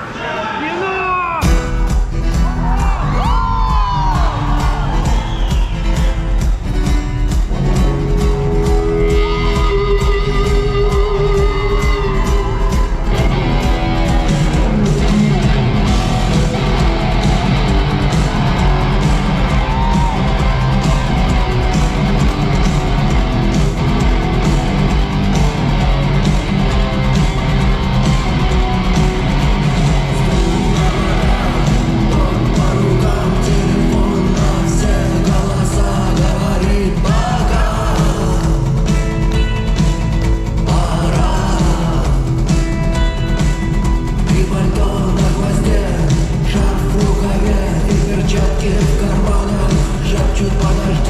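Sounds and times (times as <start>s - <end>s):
rock band playing live: 1.4s - 51.0s
person singing: 29.7s - 39.5s, 40.6s - 43.0s, 44.0s - 51.0s.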